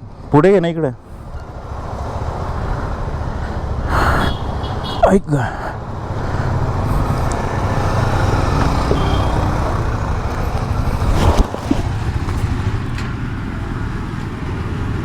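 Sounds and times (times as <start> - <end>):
street traffic: 0.0 - 15.0
motorcycle engine running: 6.5 - 15.0.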